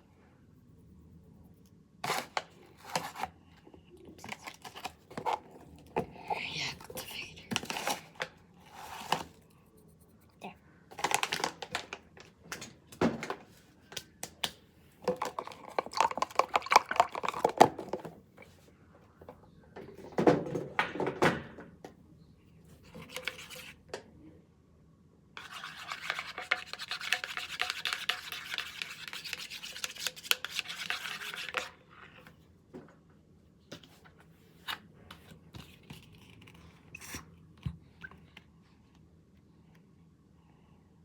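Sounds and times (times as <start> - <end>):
slime stirring: 25.4 - 31.8.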